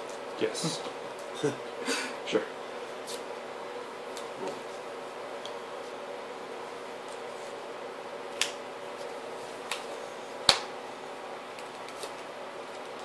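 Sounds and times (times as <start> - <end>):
low room hum: 0.0 - 13.0.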